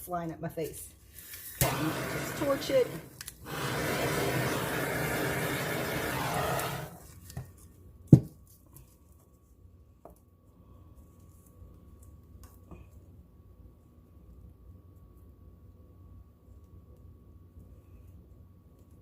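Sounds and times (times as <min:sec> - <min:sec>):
torch flame hissing: 0:01.5 - 0:07.2.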